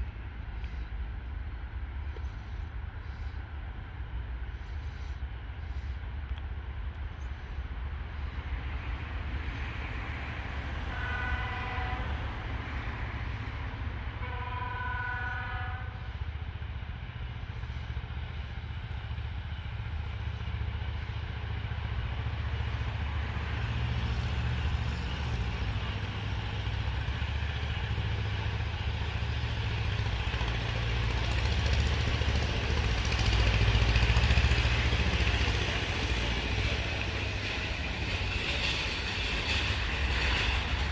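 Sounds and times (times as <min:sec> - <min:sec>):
rolling train noise: 0:00.0 - 0:40.9
locomotive air horn: 0:10.8 - 0:13.2, 0:14.1 - 0:16.2
diesel engine rumble: 0:16.0 - 0:40.9.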